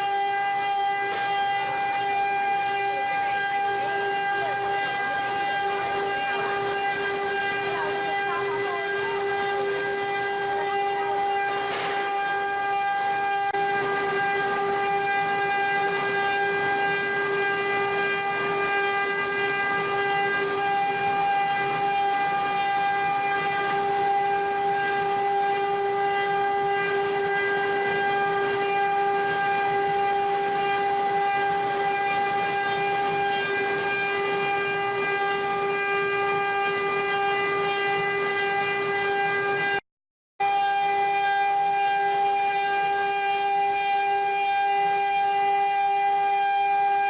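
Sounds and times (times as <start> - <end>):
spindle high whine: 0.0 - 39.8, 40.4 - 47.0.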